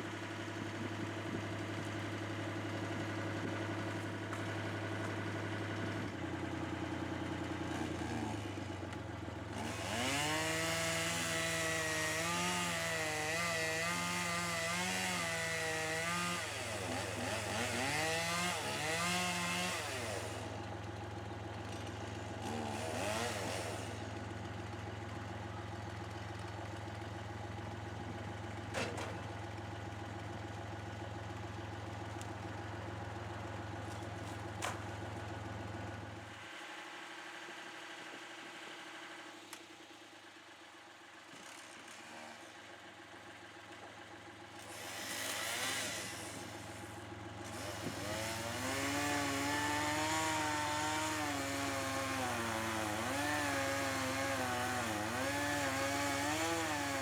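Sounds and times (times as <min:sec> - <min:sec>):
engine idling: 0:00.0 - 0:07.9, 0:24.0 - 0:41.9, 0:42.6 - 0:44.8, 0:46.0 - 0:48.2
chainsaw cutting: 0:07.3 - 0:29.5, 0:41.2 - 0:42.8, 0:43.8 - 0:57.0.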